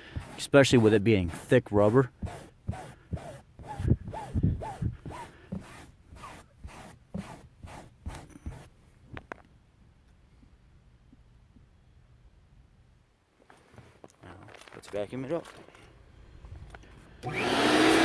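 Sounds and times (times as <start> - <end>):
rubber scrubbing over upholstery: 0.0 - 8.7.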